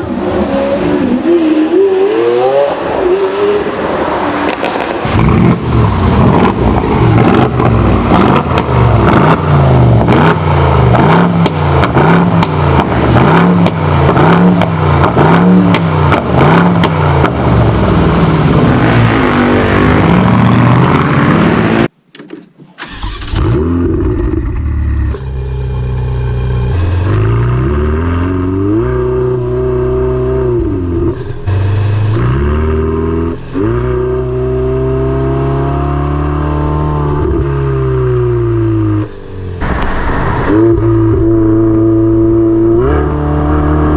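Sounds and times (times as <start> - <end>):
supercar engine revving: 5.2 - 21.9
exhaust cracks: 6.2 - 19.0, 39.0 - 41.8.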